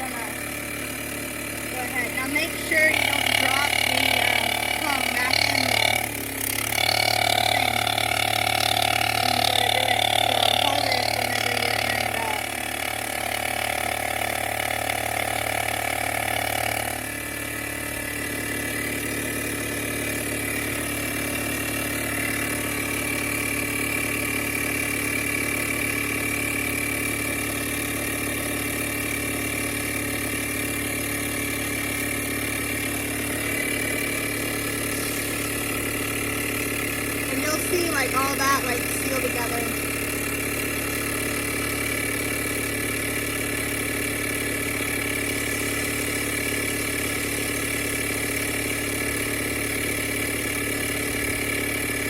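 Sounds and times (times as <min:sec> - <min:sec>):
air pump motor running: 0:00.0 - 0:52.0.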